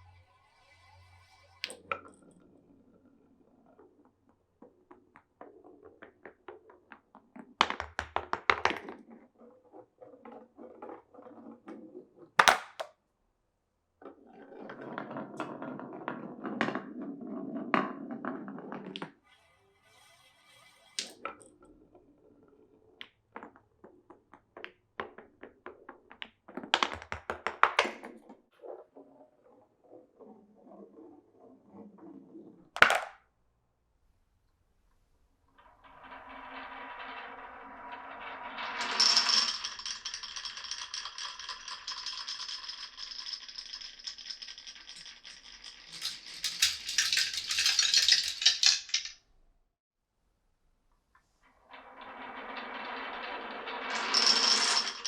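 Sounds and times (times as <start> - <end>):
marble rolling rumble: 0.0 - 12.6, 14.0 - 19.6, 20.5 - 33.0, 35.5 - 49.2, 51.5 - 55.0
marbles clattering on wood: 0.0 - 12.9, 20.5 - 33.3, 35.6 - 49.2, 51.7 - 55.0.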